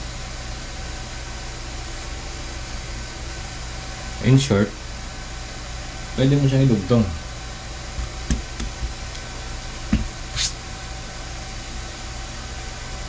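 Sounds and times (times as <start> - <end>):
room noise hum and hiss: 0.0 - 13.0
brief high hiss: 10.3 - 10.6.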